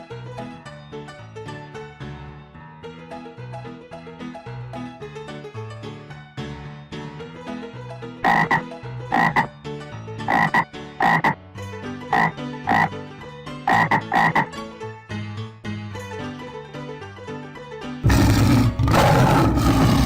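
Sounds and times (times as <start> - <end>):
frog croaking: 8.2 - 9.5, 10.3 - 11.4, 12.1 - 13.0, 13.7 - 14.5, 18.0 - 20.0.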